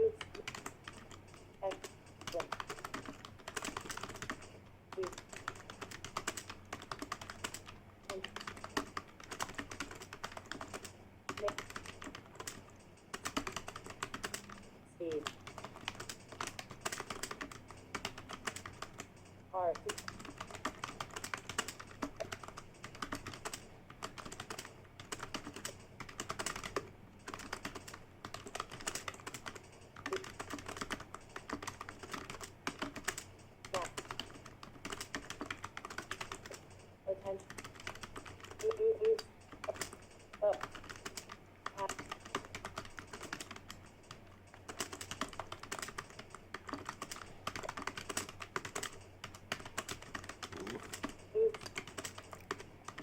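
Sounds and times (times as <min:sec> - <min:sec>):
fast typing on keyboard: 0:00.0 - 0:53.0.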